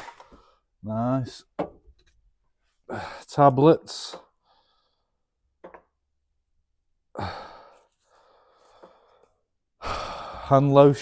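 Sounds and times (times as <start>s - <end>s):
person sighing: 7.1s - 9.1s, 9.8s - 10.5s.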